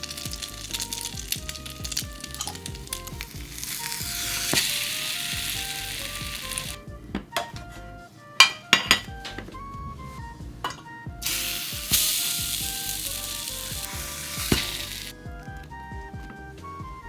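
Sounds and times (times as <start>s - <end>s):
soft background music: 0.0s - 17.0s
toast sizzling in a pan: 3.5s - 6.8s, 11.2s - 15.1s.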